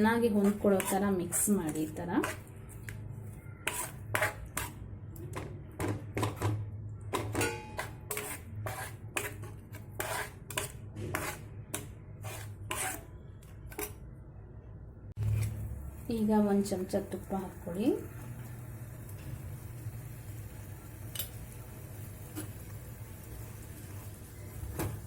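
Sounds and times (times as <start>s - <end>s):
spoon stirring and scraping pan: 0.0s - 14.1s, 15.2s - 15.7s, 21.1s - 25.0s.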